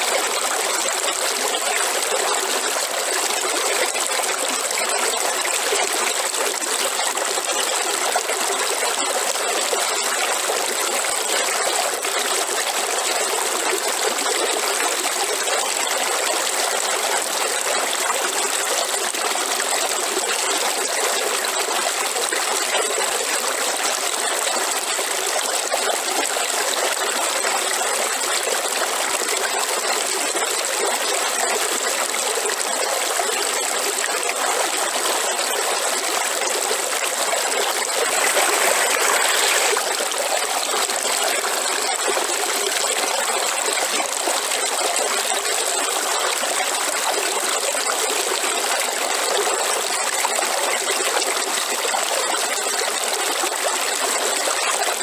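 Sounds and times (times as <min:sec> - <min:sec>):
river water flowing: 0:00.0 - 0:16.3, 0:31.4 - 0:55.0.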